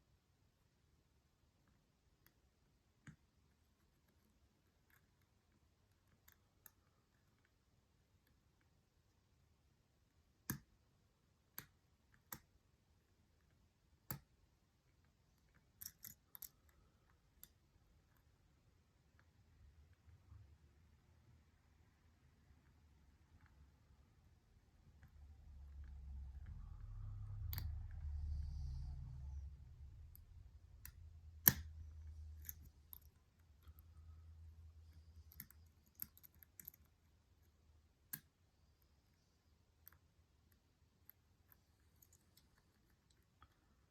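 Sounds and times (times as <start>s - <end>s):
lock pick metallic clicks: 15.5s - 16.6s, 30.8s - 33.7s, 35.2s - 36.9s
lock pick clicking in padlock: 15.8s - 16.5s
low rumble: 25.6s - 31.3s.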